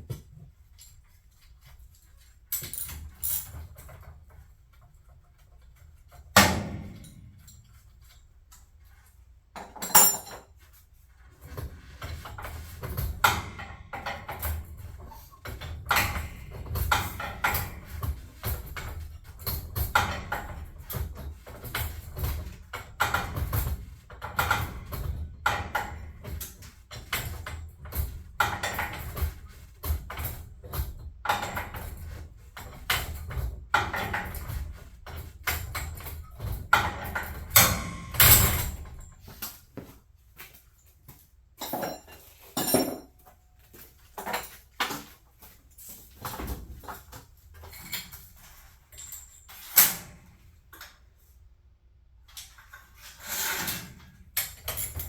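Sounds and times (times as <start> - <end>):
knocks and clinks: 9.6 - 10.5, 41.6 - 43.2.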